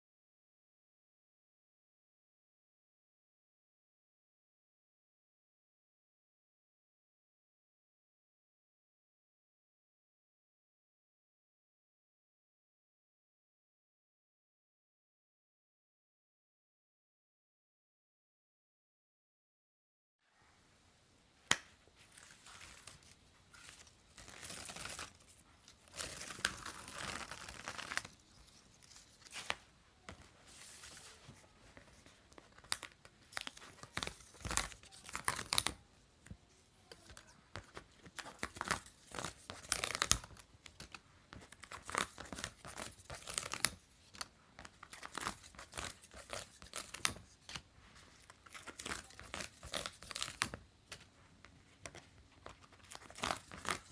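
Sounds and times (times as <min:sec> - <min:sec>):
paper tearing and crinkling: 0:22.1 - 0:29.6.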